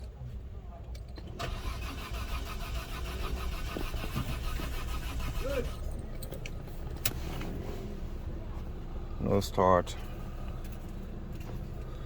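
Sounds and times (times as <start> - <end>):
car starter cranking: 1.1 - 7.2.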